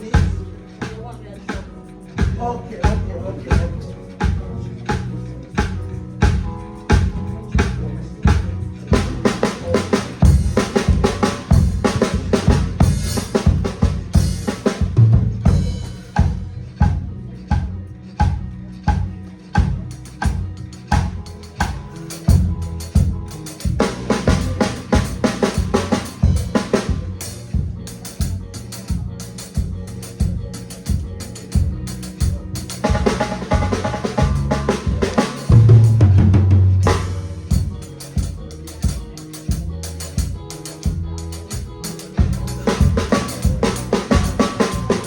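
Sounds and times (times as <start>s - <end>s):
bass line: 0.0s - 45.0s
drum kit playing: 0.0s - 45.0s
instrumental gospel music: 0.0s - 45.0s.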